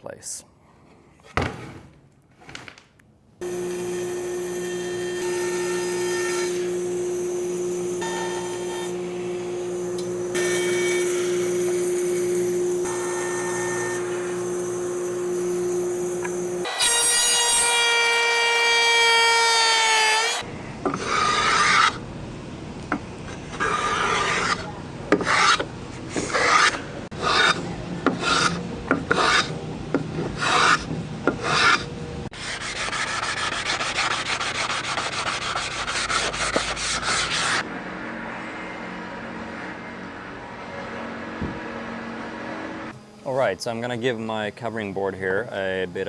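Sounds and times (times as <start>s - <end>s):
power saw cutting wood: 3.4s - 20.4s.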